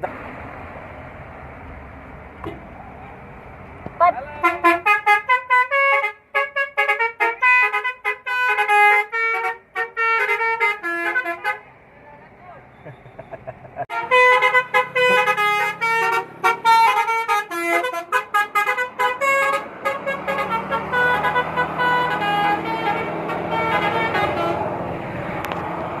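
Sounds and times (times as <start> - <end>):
bus engine running: 0.0 - 26.0
musical bus horn tune: 4.2 - 11.8, 13.9 - 24.8.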